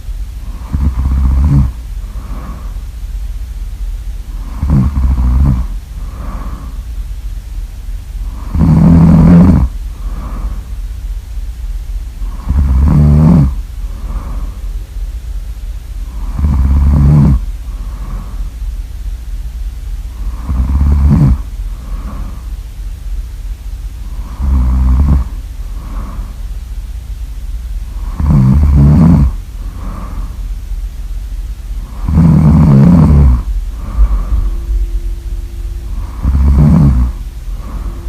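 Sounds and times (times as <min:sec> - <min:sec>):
soft breathing: 0:00.0 - 0:03.2, 0:04.2 - 0:07.4, 0:08.2 - 0:11.0, 0:12.2 - 0:15.0, 0:16.0 - 0:18.8, 0:20.0 - 0:22.9, 0:23.6 - 0:26.7, 0:27.9 - 0:38.0
loud snoring: 0:00.4 - 0:02.8, 0:04.3 - 0:06.8, 0:08.2 - 0:10.7, 0:12.2 - 0:14.6, 0:16.1 - 0:18.5, 0:20.2 - 0:22.5, 0:24.0 - 0:26.4, 0:27.9 - 0:30.4, 0:31.8 - 0:35.2, 0:35.8 - 0:38.0.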